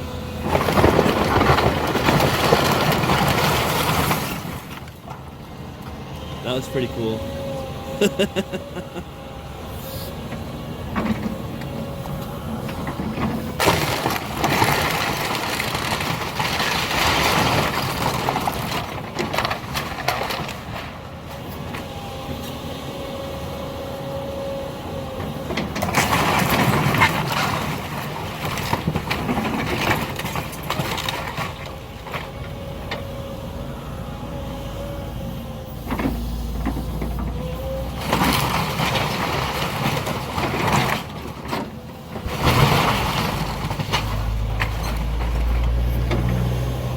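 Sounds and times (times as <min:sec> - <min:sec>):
heavy machine engine running: 0:00.0 - 0:46.9
debris cracking and crashing: 0:00.2 - 0:05.5, 0:10.9 - 0:21.9, 0:25.5 - 0:33.0, 0:37.6 - 0:46.9.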